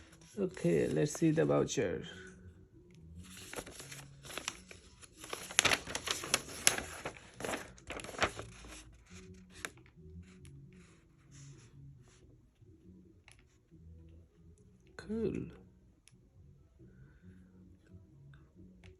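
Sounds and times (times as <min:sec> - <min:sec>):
packaging crinkling and rustling: 0:03.3 - 0:09.3.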